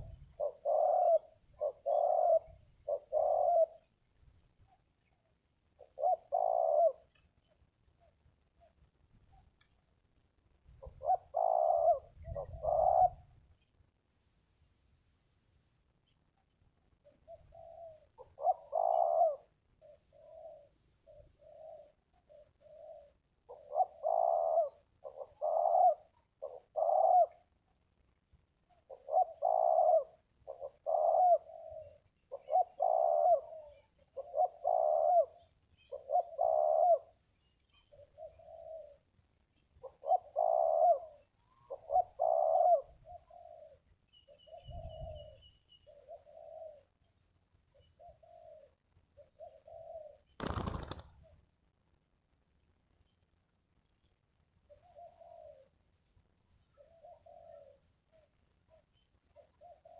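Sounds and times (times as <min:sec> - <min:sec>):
doves cooing: 0:00.0 - 0:03.9, 0:05.8 - 0:07.3, 0:10.8 - 0:13.4, 0:17.0 - 0:27.5, 0:28.8 - 0:37.2, 0:37.8 - 0:39.1, 0:39.8 - 0:47.0, 0:47.8 - 0:51.4, 0:54.6 - 0:55.8, 0:56.8 - 0:59.9
small bird chirping trills: 0:00.0 - 0:09.9, 0:12.2 - 0:25.6, 0:30.4 - 0:51.5, 0:52.8 - 0:59.9.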